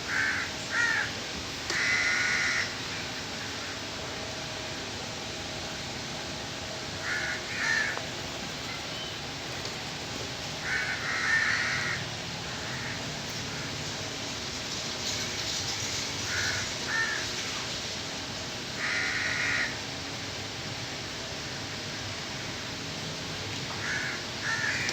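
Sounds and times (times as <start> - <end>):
steady background hiss: 0.0 - 24.9
crow-like bird caws: 0.1 - 3.8, 7.0 - 8.1, 10.6 - 13.8, 16.2 - 17.6, 18.8 - 19.8, 23.8 - 24.9.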